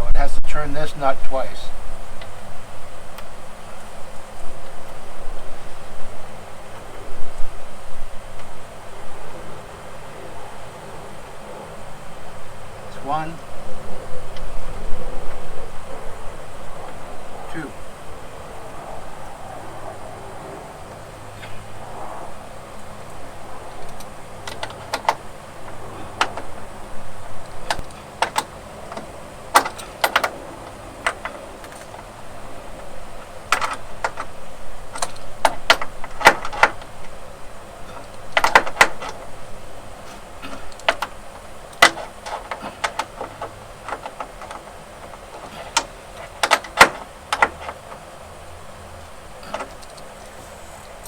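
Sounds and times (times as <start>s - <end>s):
metal hand tools clinking: 23.7s - 48.2s, 49.0s - 51.0s.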